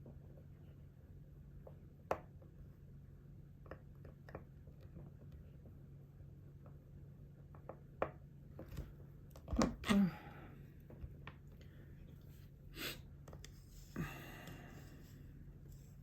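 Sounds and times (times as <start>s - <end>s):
breathy noise: 13.7s - 15.3s.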